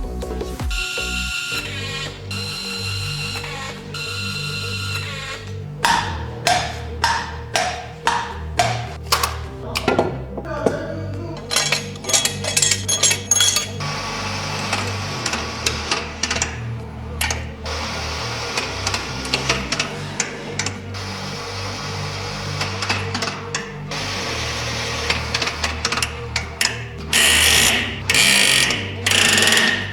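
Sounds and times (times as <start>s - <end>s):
music with stepping bass line: 0.0s - 1.4s
short metallic clicks: 11.4s - 29.9s.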